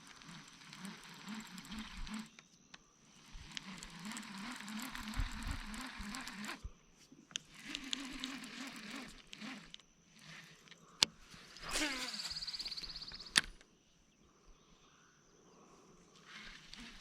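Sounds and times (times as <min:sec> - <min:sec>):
fishing reel gear whirring: 0:00.0 - 0:02.4, 0:03.1 - 0:06.7, 0:07.3 - 0:13.6, 0:16.2 - 0:17.0.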